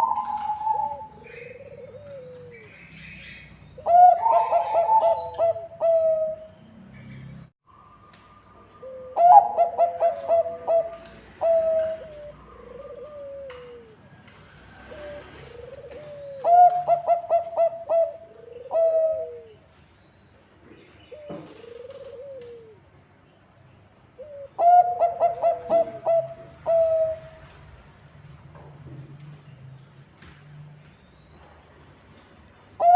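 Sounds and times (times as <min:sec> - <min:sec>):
soft dove coos: 0:00.0 - 0:02.8, 0:03.8 - 0:06.4, 0:08.8 - 0:14.0, 0:14.7 - 0:19.6, 0:21.1 - 0:22.8, 0:24.2 - 0:27.5
dove singing staccato notes: 0:00.0 - 0:06.5, 0:08.8 - 0:13.8, 0:14.9 - 0:19.4, 0:24.4 - 0:27.4.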